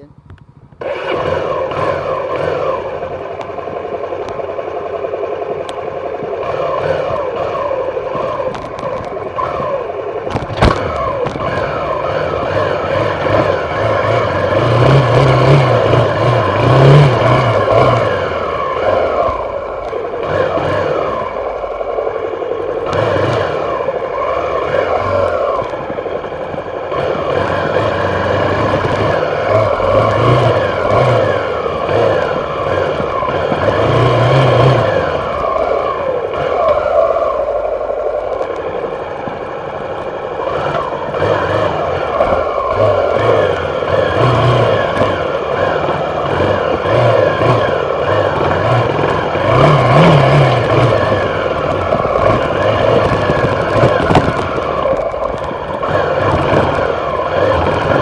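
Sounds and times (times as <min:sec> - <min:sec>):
dirt bike engines revving: 0:00.0 - 0:58.0.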